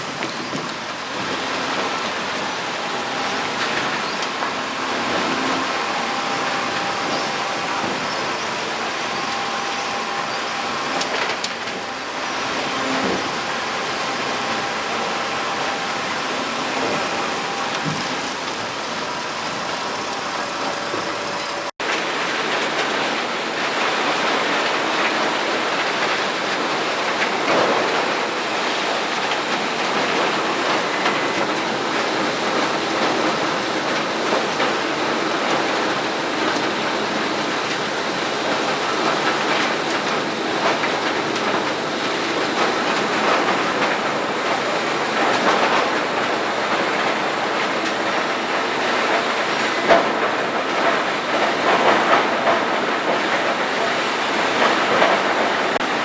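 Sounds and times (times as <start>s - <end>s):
grinder grinding and clattering: 0.0s - 21.7s.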